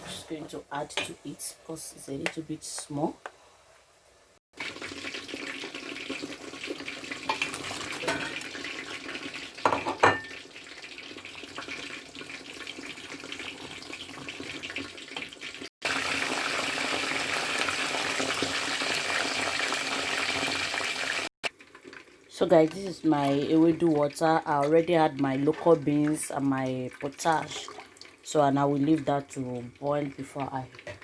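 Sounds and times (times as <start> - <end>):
pots and utensils clattering: 7.3 - 8.6, 9.6 - 10.4.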